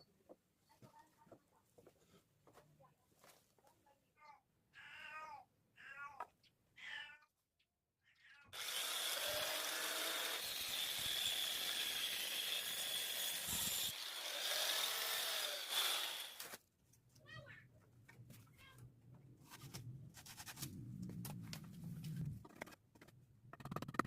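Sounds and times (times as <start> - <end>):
power tool whining on wood: 8.6 - 16.5.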